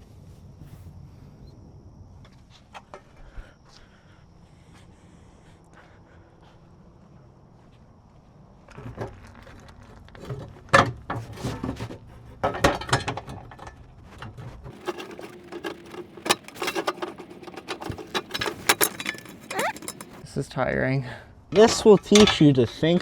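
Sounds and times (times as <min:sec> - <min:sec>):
hand tools clinking and knocking: 0:14.7 - 0:20.2.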